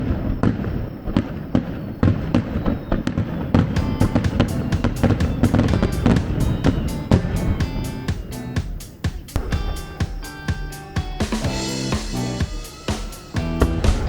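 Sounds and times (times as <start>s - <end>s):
heavy percussive hits: 3.5s - 14.0s
held instrument notes: 3.7s - 14.0s.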